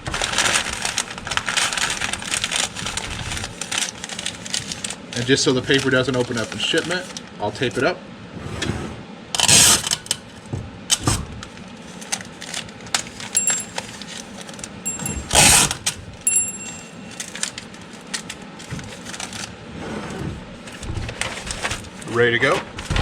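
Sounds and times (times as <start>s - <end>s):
paper crinkling: 0.1s - 7.2s
metal sockets clinking together: 13.4s - 14.1s, 14.9s - 15.7s, 16.3s - 17.5s.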